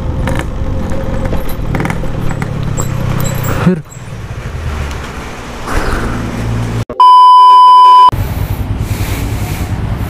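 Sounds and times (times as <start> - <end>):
motorcycle engine hum: 0.0 - 6.9
wind: 0.0 - 10.0
loud electronic beep: 6.9 - 8.1.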